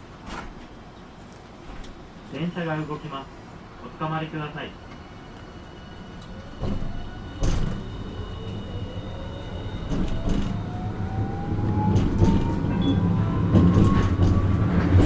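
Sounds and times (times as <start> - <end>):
wheels rumbling on rails: 4.8 - 15.0
tram motor whine rising: 4.9 - 15.0.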